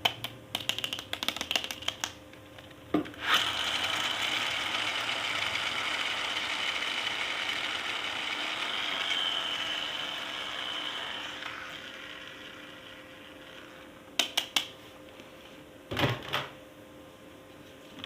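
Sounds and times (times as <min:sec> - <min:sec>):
small motor whirring: 0:03.2 - 0:14.0.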